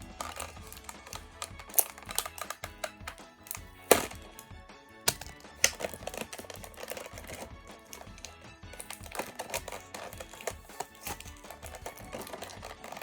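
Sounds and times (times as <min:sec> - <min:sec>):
background music: 0:00.0 - 0:13.0
toy packaging clicks and taps: 0:00.0 - 0:13.0.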